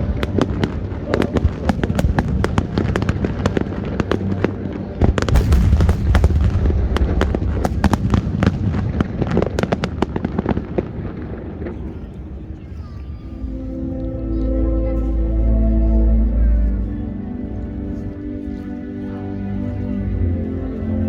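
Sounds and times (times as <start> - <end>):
fireworks bursting and crackling: 0.0 - 13.2.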